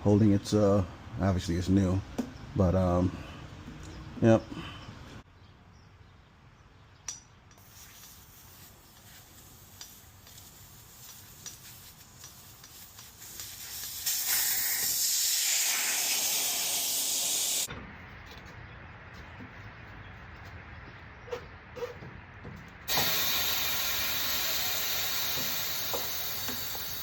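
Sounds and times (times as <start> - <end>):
compressed air hissing from hose: 7.6 - 17.7, 22.9 - 27.0.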